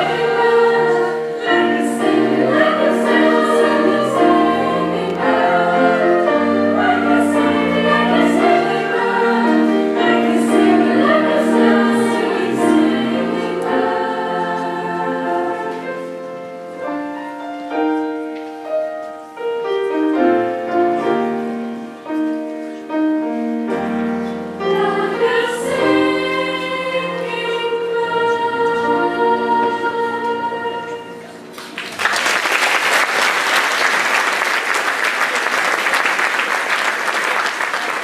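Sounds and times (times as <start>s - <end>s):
choir singing in parts: 0.0s - 16.8s, 23.7s - 31.9s.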